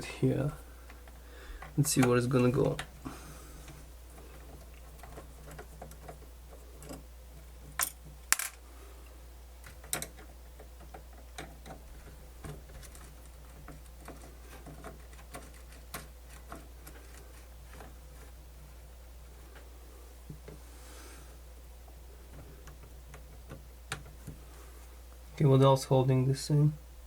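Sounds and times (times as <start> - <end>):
steady low hum: 0.0 - 27.0.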